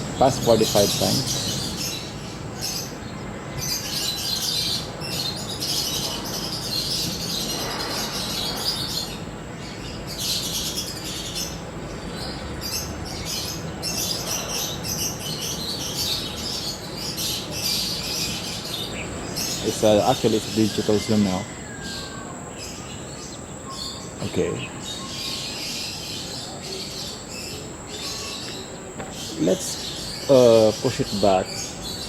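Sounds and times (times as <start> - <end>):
low background noise: 0.0 - 32.0
small birds chirping: 0.0 - 32.0.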